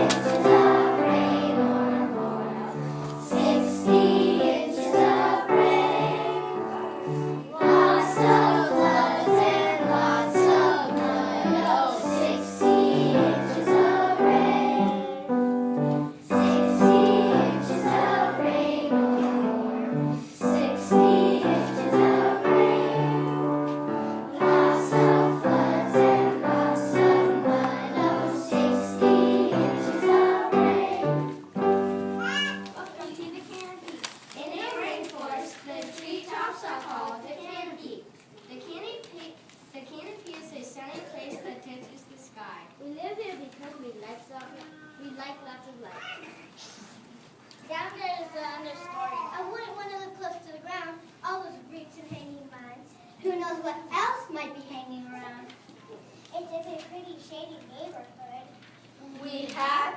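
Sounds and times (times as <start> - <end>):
choir singing children's song: 0.0 - 32.2
instrumental backing: 0.0 - 32.8.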